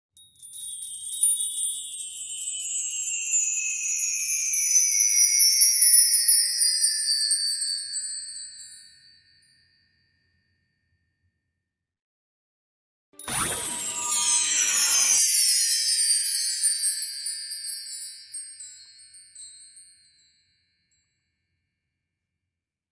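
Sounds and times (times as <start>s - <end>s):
glittering wind chime shimmer: 13.2s - 20.4s.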